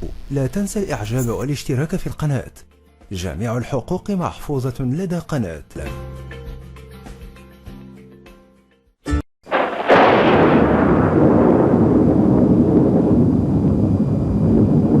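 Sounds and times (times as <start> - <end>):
background music: 0.1 - 9.2
loud explosion boom: 9.5 - 15.0.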